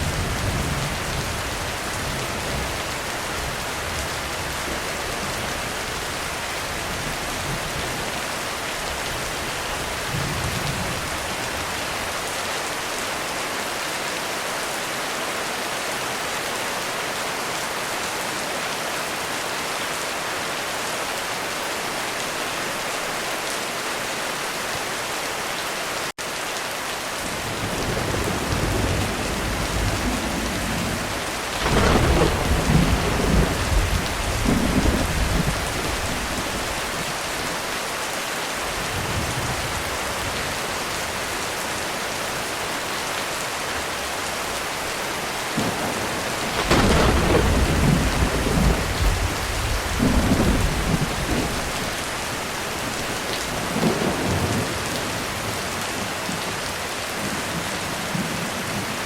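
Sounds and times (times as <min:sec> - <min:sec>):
heavy rain: 0:00.0 - 0:59.0
rolling thunder: 0:27.5 - 0:37.0, 0:45.6 - 0:52.0.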